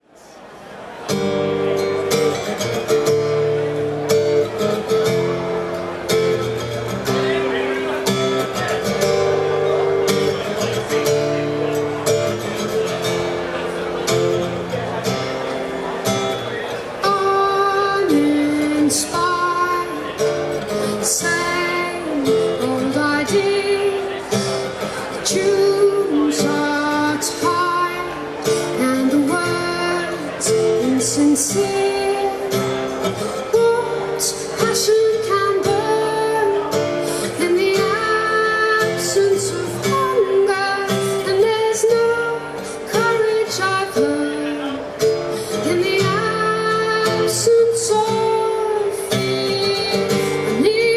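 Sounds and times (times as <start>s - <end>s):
strummed acoustic guitar: 0.4s - 50.9s
woman singing: 17.0s - 24.2s, 25.2s - 44.8s, 45.4s - 50.9s.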